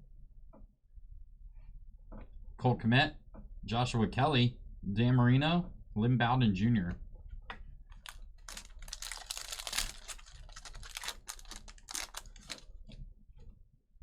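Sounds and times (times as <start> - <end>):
cards clicking and rustling: 8.0 - 12.7.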